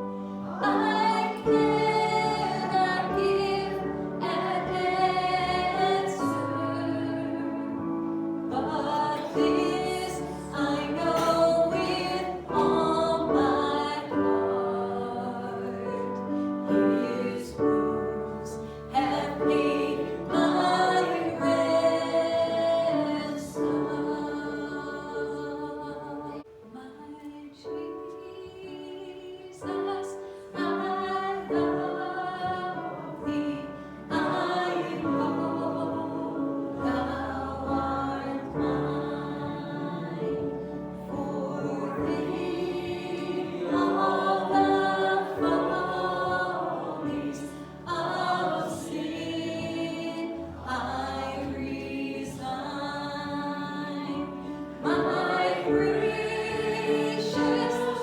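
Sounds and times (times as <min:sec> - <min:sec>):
group singing a hymn: 0:00.0 - 0:26.5, 0:28.3 - 0:58.0.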